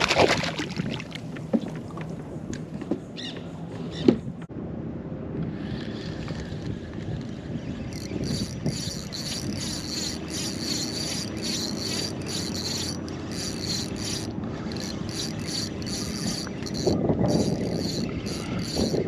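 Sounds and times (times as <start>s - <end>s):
steady low hum: 4.5s - 19.0s
fishing reel rasping: 7.9s - 19.0s.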